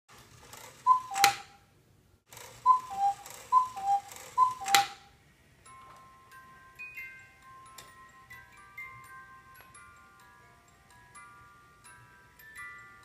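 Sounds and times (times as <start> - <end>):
cuckoo clock calling: 0.8 - 1.6, 2.5 - 5.1.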